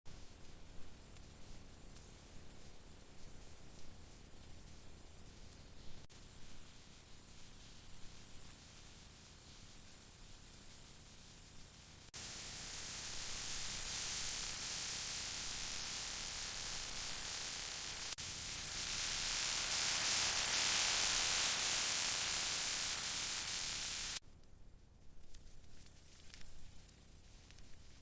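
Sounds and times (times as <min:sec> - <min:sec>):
steak sizzling on hot stone: 0:12.1 - 0:24.2.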